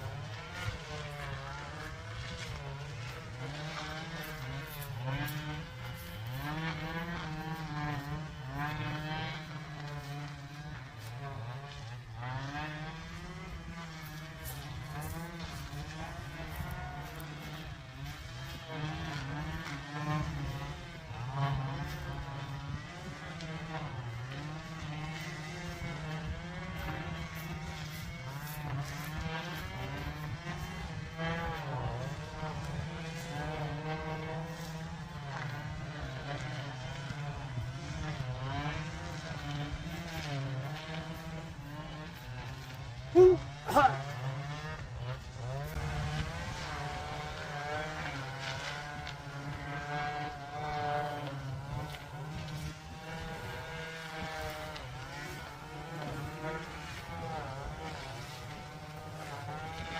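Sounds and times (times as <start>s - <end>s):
drone propellers whining: 40.8s - 49.8s.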